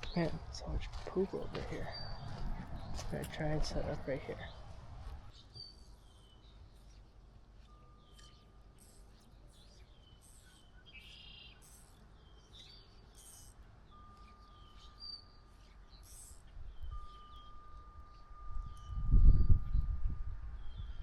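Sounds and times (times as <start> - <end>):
low outdoor rumble: 0.0 - 10.2
small birds chirping: 0.0 - 21.0.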